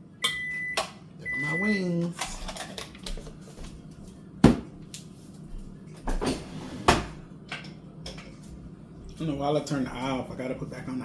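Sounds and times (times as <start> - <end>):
light kitchen clatter: 6.0 - 8.5.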